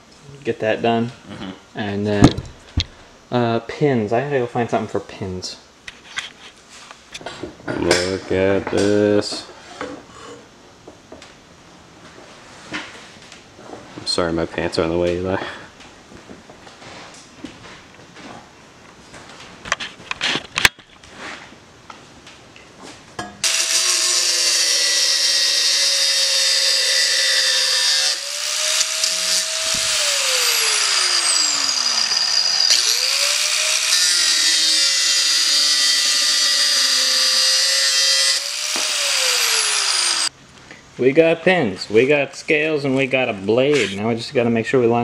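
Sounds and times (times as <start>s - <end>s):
electric power tool running: 23.4s - 40.3s.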